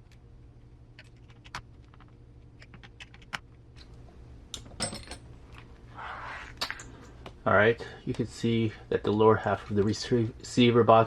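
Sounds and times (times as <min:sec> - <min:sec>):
small parts clicking and clattering: 0:00.9 - 0:05.7.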